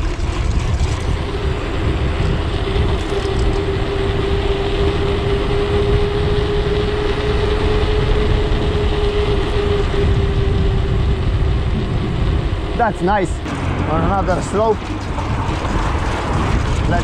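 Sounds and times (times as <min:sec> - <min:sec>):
bike tyre rumble: 0:00.0 - 0:17.0
steady hum: 0:00.0 - 0:17.0
wind rushing over microphone: 0:00.0 - 0:17.0.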